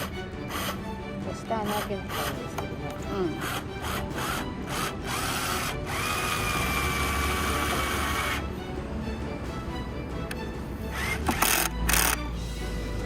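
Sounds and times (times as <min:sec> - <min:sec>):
electric drill whining: 0:00.0 - 0:00.8, 0:01.7 - 0:02.6, 0:03.3 - 0:08.4, 0:10.9 - 0:12.2.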